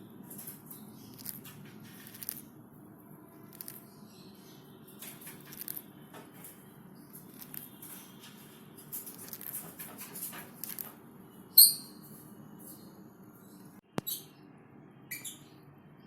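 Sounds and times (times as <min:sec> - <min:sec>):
sharp high bird chirp: 0:11.5 - 0:12.1, 0:13.9 - 0:15.7.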